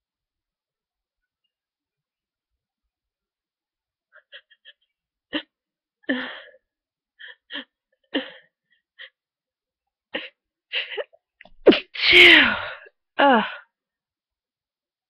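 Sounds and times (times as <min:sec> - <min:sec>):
loud sneeze: 0:11.6 - 0:12.6.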